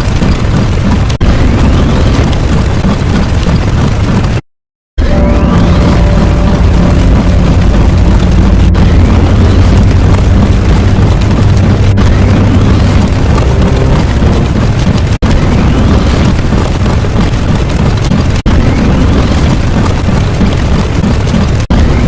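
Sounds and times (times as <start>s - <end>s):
faint rising whines: 5.0s - 14.6s.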